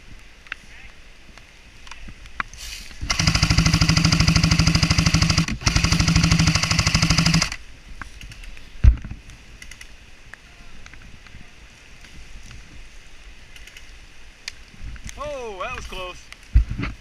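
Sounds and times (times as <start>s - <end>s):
airsoft gun firing full auto: 3.1s - 7.6s
steady motor hum: 3.1s - 7.6s.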